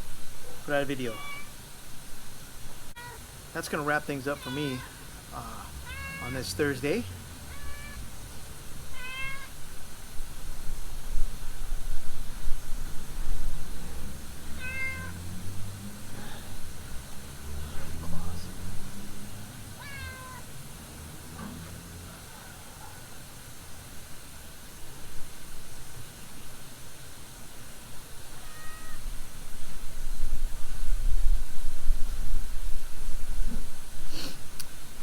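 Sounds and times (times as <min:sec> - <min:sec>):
cat meowing: 0:01.0 - 0:01.6, 0:03.0 - 0:03.3, 0:04.2 - 0:08.2, 0:08.8 - 0:09.6, 0:14.5 - 0:15.2, 0:19.7 - 0:20.6, 0:28.3 - 0:29.2.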